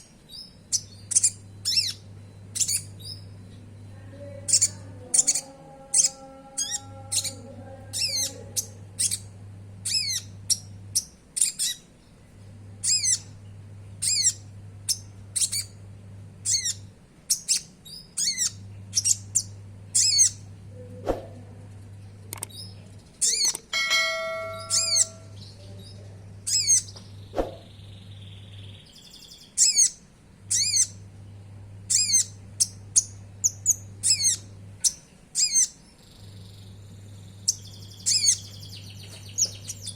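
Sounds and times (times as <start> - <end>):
bird chirping: 0.0 - 12.2, 12.8 - 15.8, 16.4 - 20.5, 22.5 - 31.1, 31.9 - 39.9
bird rattling trill: 23.2 - 25.4.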